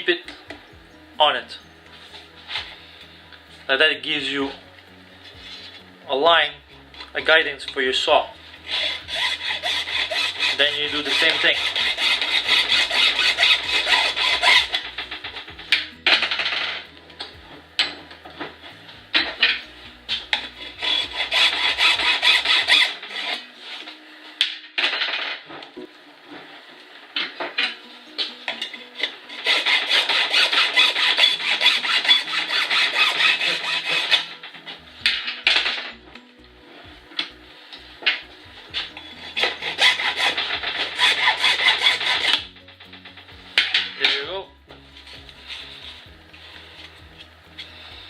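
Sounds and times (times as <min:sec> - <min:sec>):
hand saw cutting pipe: 0:08.1 - 0:16.8, 0:19.2 - 0:24.0, 0:27.6 - 0:35.8, 0:38.1 - 0:43.0.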